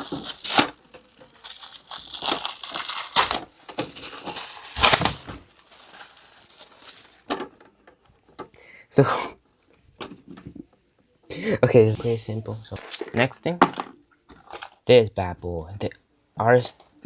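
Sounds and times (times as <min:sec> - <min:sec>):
packaging rustling and tearing: 0:00.0 - 0:07.4, 0:12.0 - 0:13.2.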